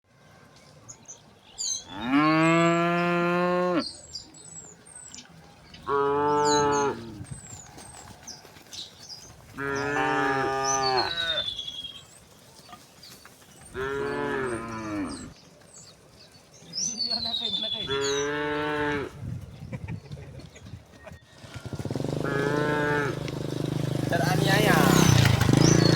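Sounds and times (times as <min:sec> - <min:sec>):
small birds chirping: 0:00.4 - 0:25.9
cows mooing: 0:01.9 - 0:04.1, 0:05.8 - 0:08.1, 0:09.5 - 0:11.6, 0:13.7 - 0:15.4, 0:17.8 - 0:19.2, 0:21.7 - 0:25.9.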